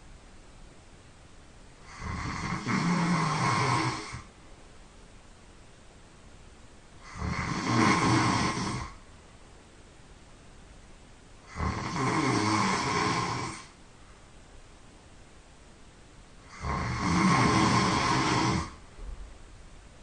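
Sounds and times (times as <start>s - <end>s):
person snoring loudly: 1.8s - 4.3s, 7.0s - 9.0s, 11.5s - 13.7s, 16.4s - 18.8s.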